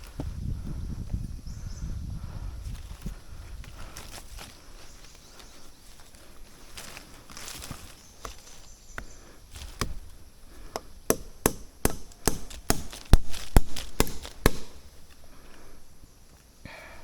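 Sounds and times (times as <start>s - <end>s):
blade chopping wood: 9.0s - 10.1s, 10.7s - 15.0s.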